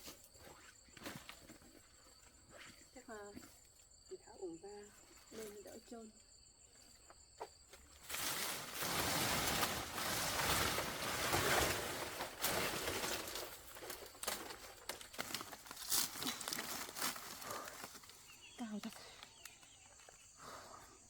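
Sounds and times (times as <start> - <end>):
person climbing onto a roof: 7.0 - 18.3.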